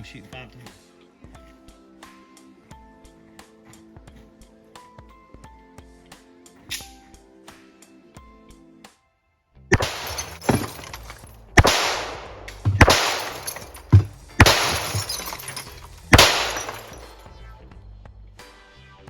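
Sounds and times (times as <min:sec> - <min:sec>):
pistol shots: 0:09.7 - 0:17.2
glass bottles breaking: 0:09.7 - 0:17.3.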